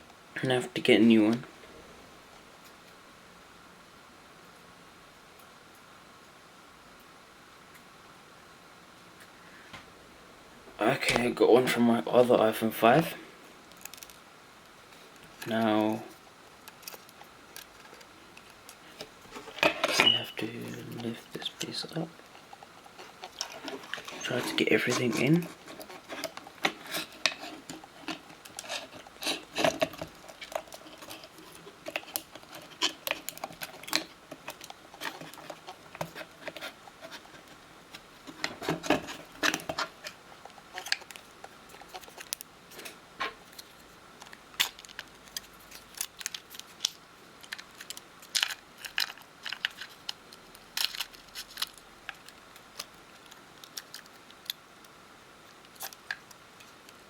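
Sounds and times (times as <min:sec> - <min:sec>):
small tools clicking and scraping: 0:13.7 - 0:14.2, 0:15.1 - 0:57.0.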